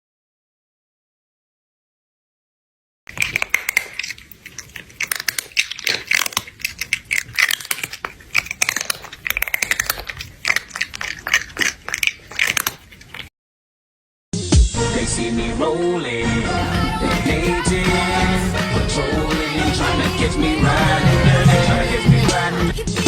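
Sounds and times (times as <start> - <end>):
rapid irregular crunching: 3.1 - 13.3.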